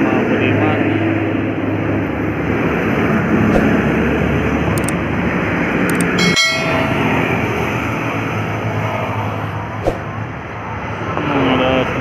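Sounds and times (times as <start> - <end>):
heavy truck passing: 0.3 - 12.0
short high tone: 6.2 - 7.6.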